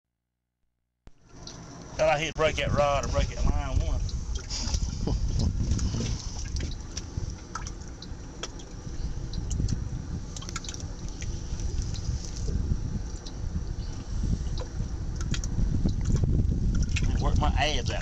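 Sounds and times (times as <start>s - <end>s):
steady low rumble: 1.1s - 18.0s
water dripping and lapping: 3.9s - 18.0s
small splashes: 4.3s - 12.6s, 14.5s - 17.2s.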